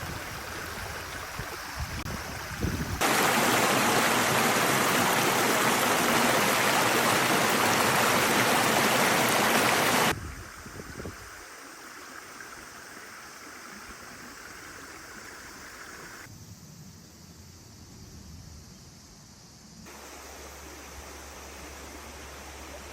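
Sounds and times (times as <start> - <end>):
quiet steady hiss: 0.0 - 22.9
river water rushing: 3.0 - 10.1.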